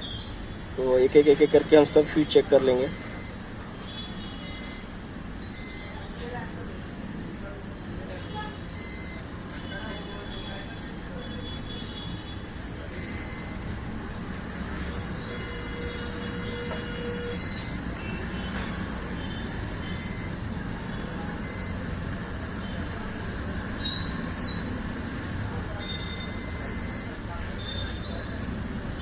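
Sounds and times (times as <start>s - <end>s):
multimeter continuity beeps: 1.0s - 3.4s, 4.4s - 6.4s, 8.8s - 9.3s, 12.8s - 14.2s, 15.2s - 18.2s, 19.8s - 20.5s, 21.4s - 21.9s, 25.8s - 28.1s.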